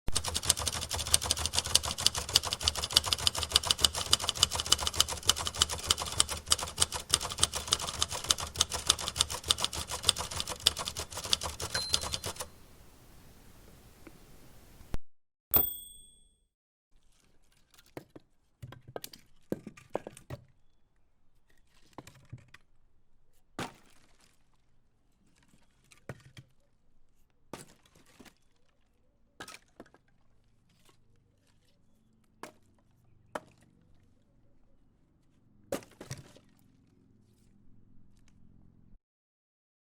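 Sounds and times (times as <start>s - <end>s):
typewriter keys clacking: 0.1s - 12.5s
typewriter bell ding: 10.0s - 12.6s, 15.5s - 16.4s.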